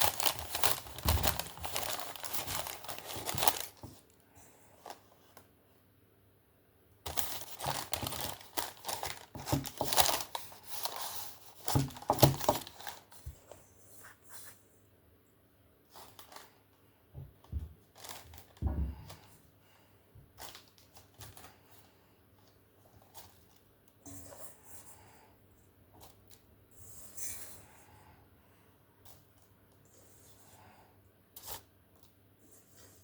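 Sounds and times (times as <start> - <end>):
dough rustling and scraping in bowl: 0.0 - 4.1, 32.4 - 33.0
dull thud: 18.6 - 19.1.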